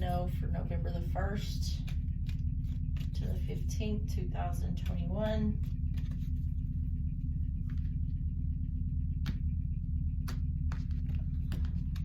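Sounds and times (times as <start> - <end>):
steady low hum: 0.0 - 12.0
cards being shuffled: 1.7 - 3.5, 4.8 - 6.6, 10.2 - 12.0.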